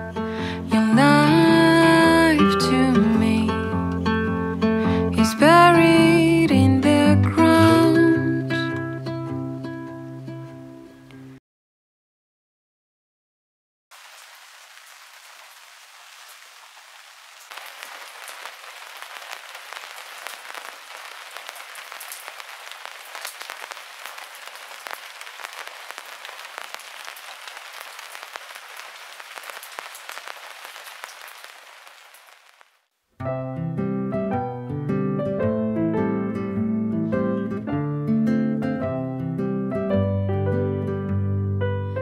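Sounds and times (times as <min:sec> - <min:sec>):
rain on hard surfaces: 0:13.9 - 0:32.9.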